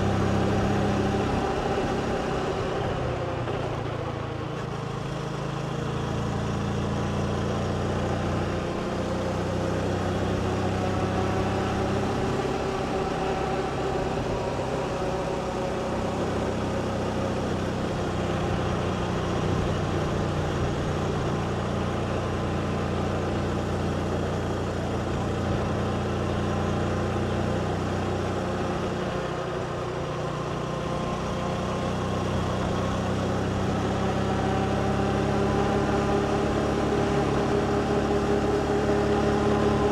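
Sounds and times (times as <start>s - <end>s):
motorbike engine running: 0.0s - 39.9s.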